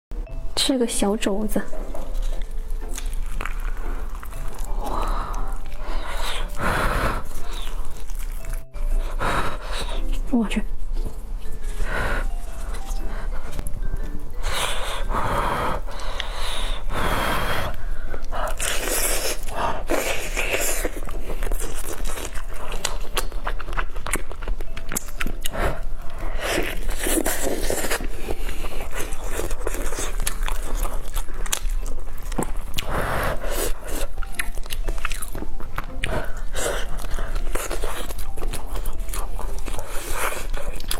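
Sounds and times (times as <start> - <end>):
person chewing food: 1.7 - 40.9
breathy huffs: 3.8 - 8.0, 8.7 - 10.2, 11.5 - 13.6, 14.3 - 20.7, 35.9 - 37.9.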